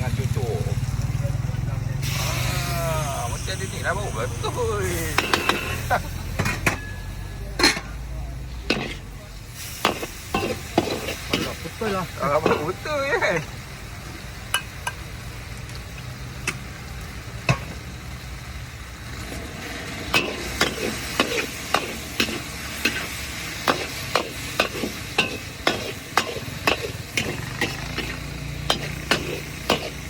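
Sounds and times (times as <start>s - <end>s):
noodles sizzling in a wok: 0.0s - 30.0s
metal spatula scraping a wok: 4.9s - 13.0s, 19.6s - 30.0s.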